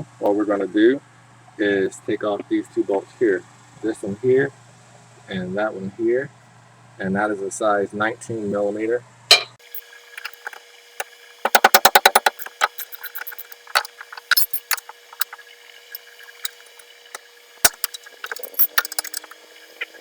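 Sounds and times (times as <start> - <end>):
metallic clicks and taps: 11.5 - 15.4, 17.7 - 19.4
socket ratchet clicking: 11.5 - 15.4, 17.6 - 19.4.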